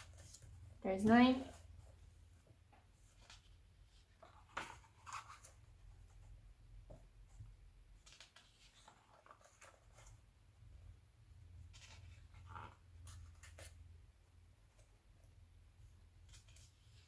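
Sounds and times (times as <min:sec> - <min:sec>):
magazine pages rustling: 0:08.0 - 0:10.3.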